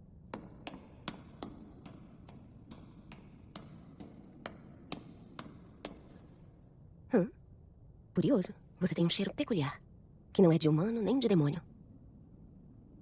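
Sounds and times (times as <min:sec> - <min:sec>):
faint low hum: 0:00.0 - 0:13.0.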